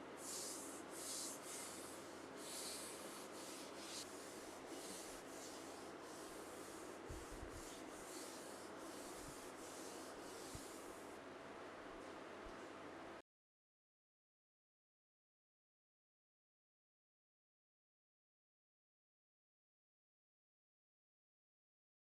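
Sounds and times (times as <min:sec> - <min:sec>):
rubbing swishes: 0:00.2 - 0:11.1.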